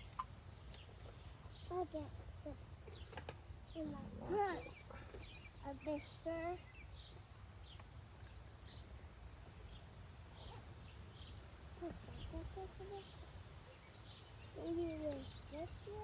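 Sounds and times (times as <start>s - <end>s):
bird chirping: 0.0s - 16.0s.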